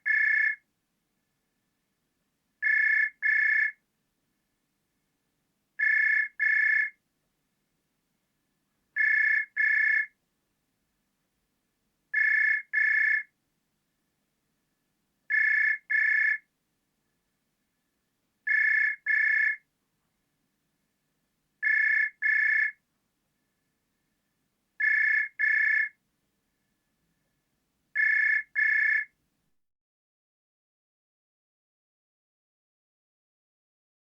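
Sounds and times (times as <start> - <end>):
telephone ringing double ring: 18.5 - 19.6, 21.6 - 22.7, 28.0 - 29.1.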